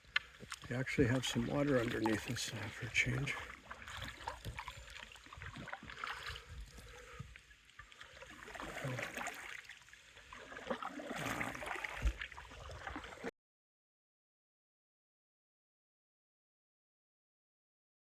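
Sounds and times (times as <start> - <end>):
paddle strokes and water swishing: 0.0 - 13.3.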